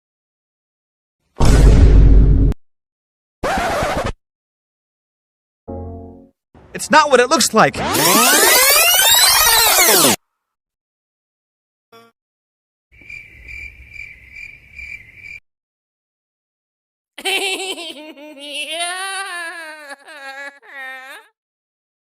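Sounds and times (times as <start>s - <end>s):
cricket chirping: 13.0s - 15.4s.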